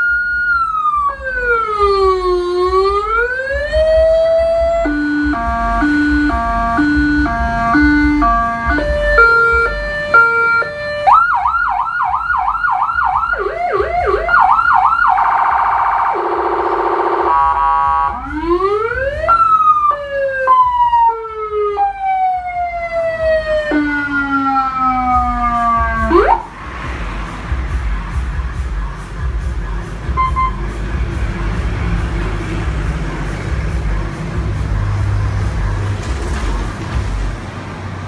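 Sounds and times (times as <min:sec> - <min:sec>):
electronic siren: 0:00.0 - 0:26.5, 0:30.1 - 0:30.7.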